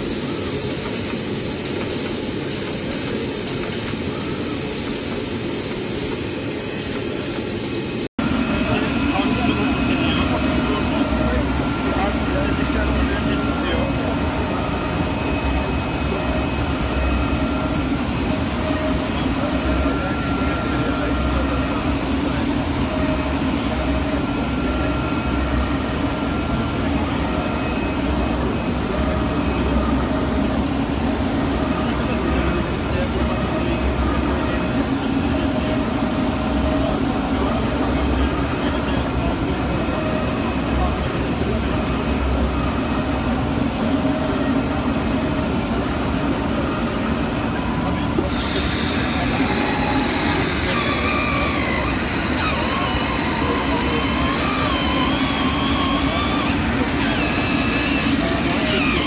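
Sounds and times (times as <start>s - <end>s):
high machine whine and hiss: 0.0s - 59.0s
fabric cutting machine humming: 8.2s - 59.0s
fabric cutting machine whirring: 46.7s - 59.0s.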